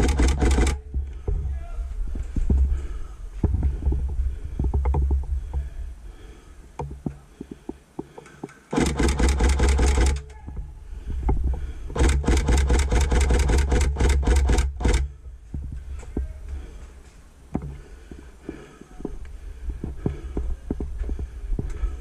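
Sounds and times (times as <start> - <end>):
airsoft gun full-auto fire: 0.0 - 0.8, 8.7 - 10.2, 12.0 - 15.1.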